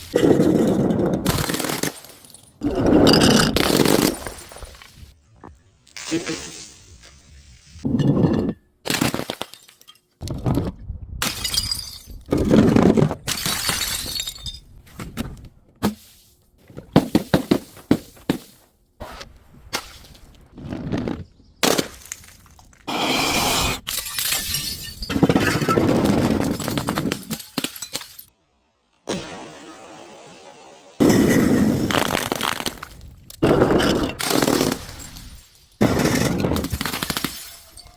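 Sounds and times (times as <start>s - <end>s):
glass bottles shattering: 1.2s - 4.9s, 11.2s - 12.3s, 13.3s - 14.7s, 23.8s - 28.3s, 33.6s - 37.9s.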